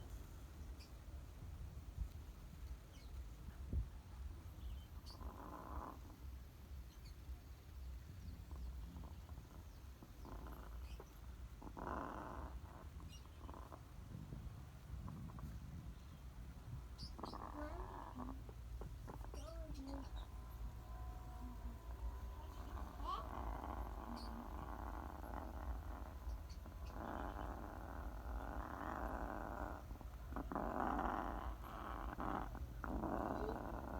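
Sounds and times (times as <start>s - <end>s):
low rumble: 14.0s - 33.9s
parrots chattering: 16.6s - 33.9s.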